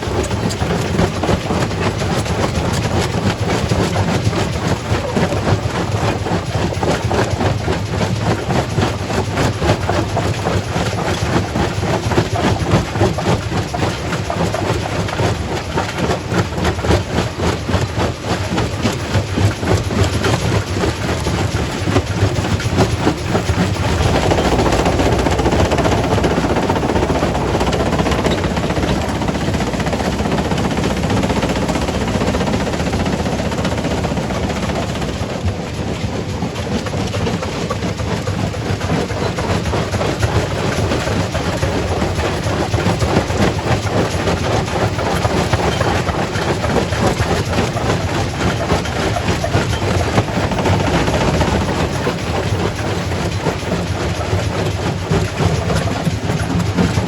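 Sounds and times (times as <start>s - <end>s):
rock crusher rumbling: 0.0s - 57.0s
dense steady rush: 23.2s - 36.8s.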